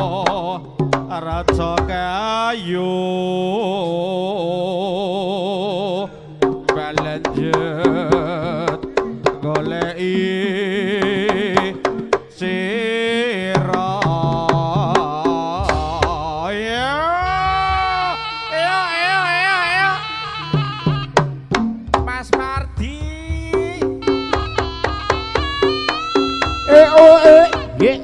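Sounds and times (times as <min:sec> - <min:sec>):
sharp drum strokes: 0:13.6 - 0:18.4, 0:19.8 - 0:28.0.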